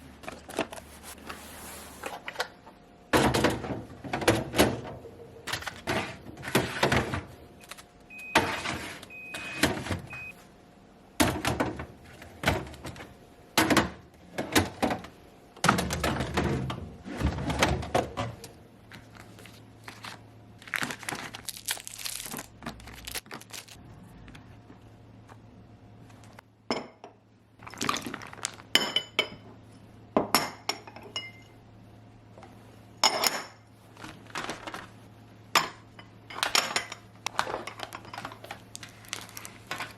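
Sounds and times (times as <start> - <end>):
low steady hum: 0.0 - 39.9
plastic and glass containers clattering: 36.3 - 39.9.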